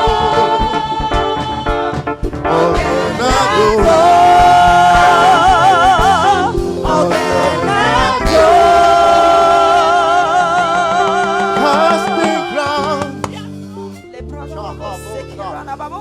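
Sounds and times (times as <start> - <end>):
gospel band accompaniment: 0.0 - 16.0
person singing long notes with vibrato: 2.5 - 13.3.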